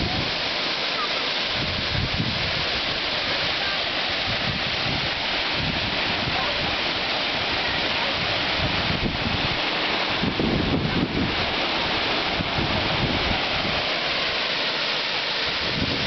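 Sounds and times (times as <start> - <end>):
waterfall roaring: 0.0 - 16.0
wind buffeting microphone: 1.5 - 3.4, 4.0 - 14.2, 15.5 - 16.0.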